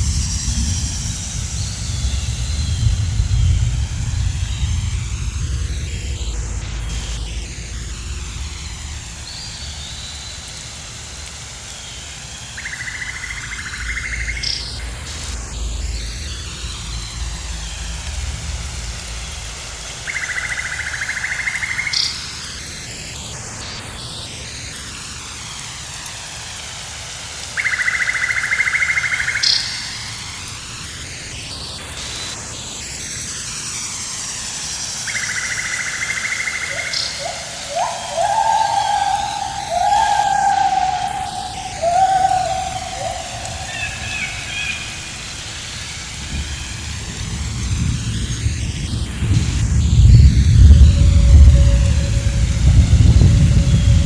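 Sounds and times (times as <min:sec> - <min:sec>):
low rumble: 0:00.0 - 0:09.6, 0:46.2 - 0:54.0
steady background hiss: 0:00.0 - 0:54.0
high buzzing call: 0:36.2 - 0:45.1.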